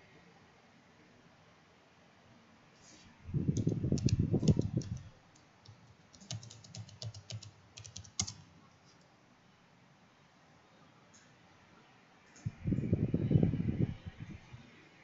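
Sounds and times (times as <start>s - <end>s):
typing on keyboard: 3.6s - 8.5s.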